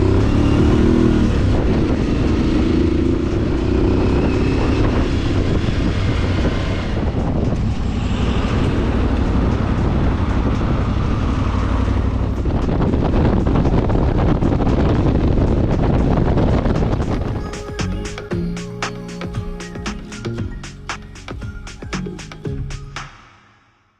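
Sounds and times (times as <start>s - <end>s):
wind buffeting microphone: 0.0s - 17.5s
motorcycle engine running: 0.0s - 21.9s.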